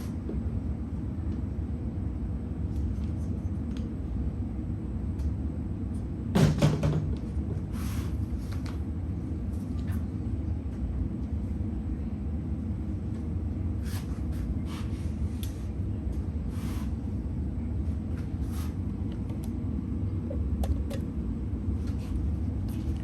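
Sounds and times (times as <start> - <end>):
steady low rumble: 7.2 - 23.0.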